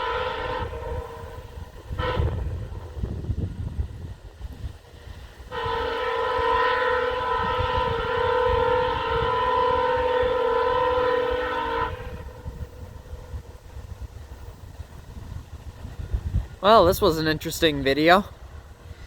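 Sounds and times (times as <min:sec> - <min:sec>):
locomotive air horn chord: 0:00.0 - 0:02.8, 0:05.5 - 0:13.4
low rumble of train: 0:00.0 - 0:19.0.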